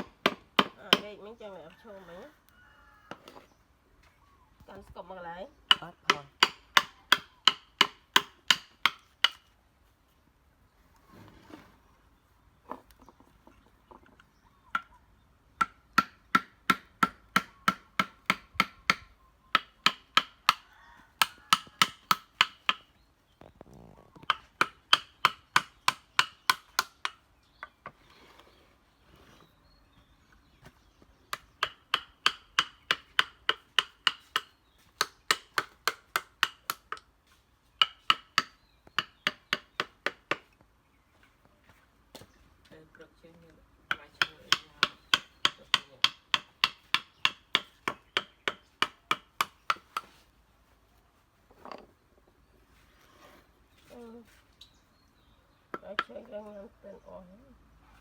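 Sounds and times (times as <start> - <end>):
mallet striking carving chisel: 5.7 - 9.4, 15.6 - 20.6, 21.2 - 22.8, 31.3 - 37.0, 37.8 - 40.4, 43.9 - 49.8.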